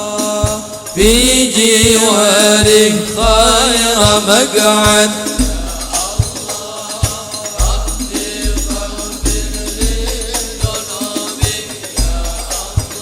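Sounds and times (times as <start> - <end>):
tambourine jingles: 0.0 - 13.0
deep frame drum beats: 0.4 - 13.0
choir singing long notes: 1.8 - 13.0.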